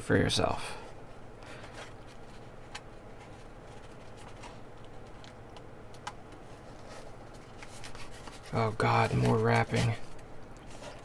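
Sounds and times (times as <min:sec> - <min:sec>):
low steady hum: 0:00.0 - 0:11.0
package clicks and rustles: 0:01.5 - 0:11.0.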